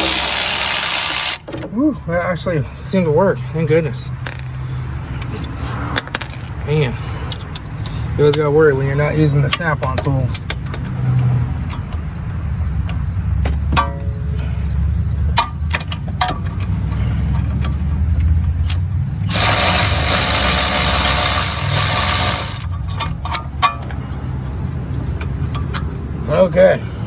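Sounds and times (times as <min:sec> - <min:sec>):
cordless electric ratchet running: 0:00.0 - 0:01.5, 0:19.2 - 0:22.7
metallic clinks of sockets and bolts: 0:04.2 - 0:07.7, 0:22.6 - 0:26.3.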